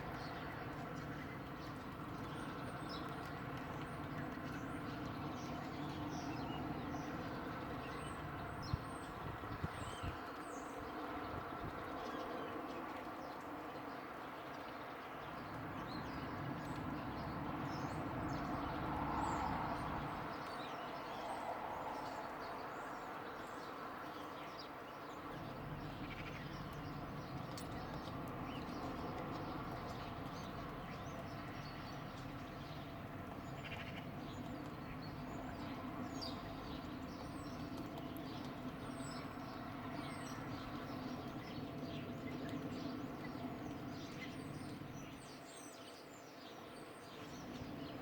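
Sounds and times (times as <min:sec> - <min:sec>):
small birds chirping: 0:22.0 - 0:48.0.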